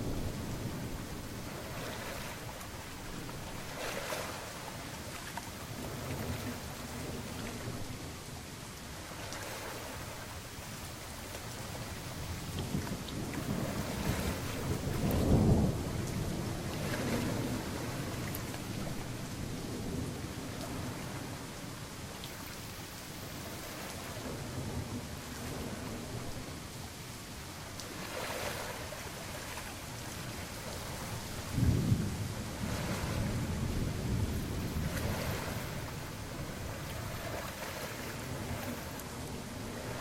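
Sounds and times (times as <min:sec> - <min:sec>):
thunder rumbling: 0:00.0 - 0:04.7, 0:11.4 - 0:21.8, 0:27.9 - 0:40.0
rain hiss: 0:00.0 - 0:40.0.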